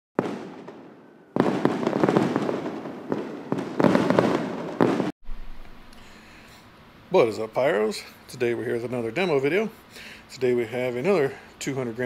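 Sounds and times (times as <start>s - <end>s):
firework crackling: 0.2s - 5.8s
firework bursts: 0.2s - 6.3s.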